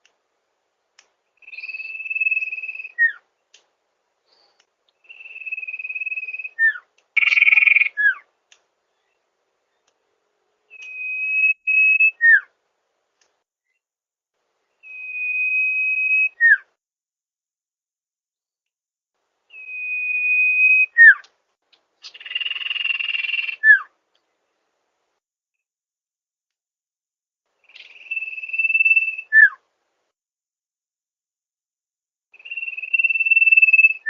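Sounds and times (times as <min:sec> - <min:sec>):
bird whistling call: 0:01.4 - 0:03.2, 0:05.0 - 0:08.2, 0:10.7 - 0:12.5, 0:14.8 - 0:16.7, 0:19.5 - 0:21.3, 0:22.0 - 0:23.9, 0:27.6 - 0:29.6, 0:32.4 - 0:34.0.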